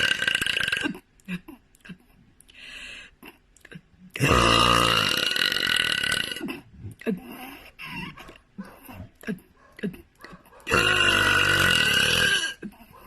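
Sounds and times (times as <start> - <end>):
woman burping: 0.0 - 2.0, 3.2 - 8.2, 10.7 - 13.0.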